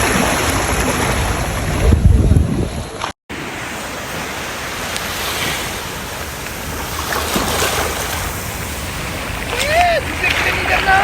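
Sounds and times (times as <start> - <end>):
sea waves washing in: 0.0 - 11.0
wind buffeting microphone: 0.1 - 3.0.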